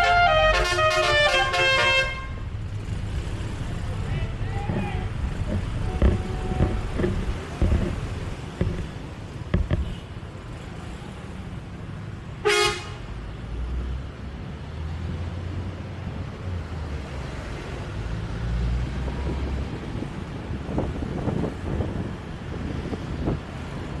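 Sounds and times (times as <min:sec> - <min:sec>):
vehicle horn toot: 0:00.0 - 0:02.4, 0:05.8 - 0:06.9, 0:12.4 - 0:13.0
engine rumble: 0:00.8 - 0:24.0.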